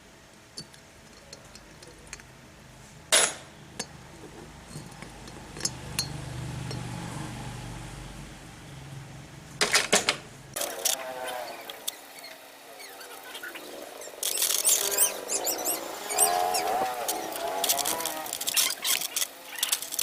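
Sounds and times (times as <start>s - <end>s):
metal parts clinking and knocking: 0.6s - 2.3s, 3.1s - 6.9s, 9.6s - 10.2s, 16.4s - 20.0s.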